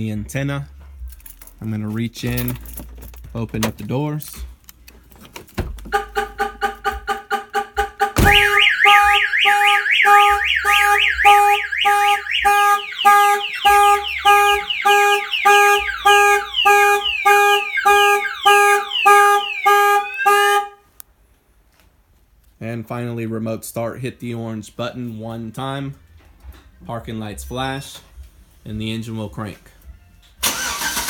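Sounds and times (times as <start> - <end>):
car alarm multi-tone siren: 5.9 - 20.8
car alarm pulsing tone: 5.9 - 20.8.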